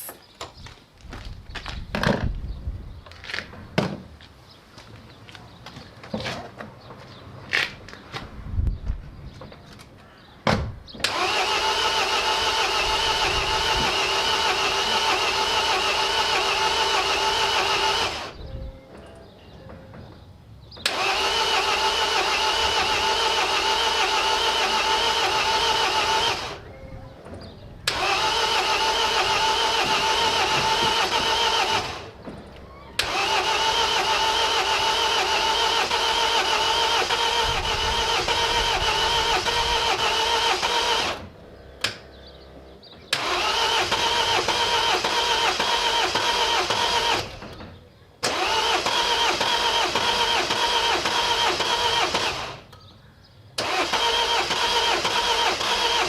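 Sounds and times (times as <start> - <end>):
starter motor cranking engine: 11.0 - 18.4, 20.8 - 26.7, 27.8 - 32.2, 33.0 - 41.3, 43.1 - 47.6, 48.2 - 52.8, 53.6 - 56.0.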